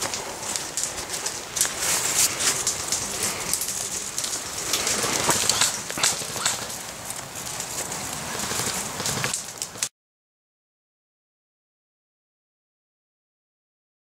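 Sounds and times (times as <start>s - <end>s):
footsteps through wet undergrowth: 0.0s - 9.8s
light rain hissing: 0.0s - 9.9s.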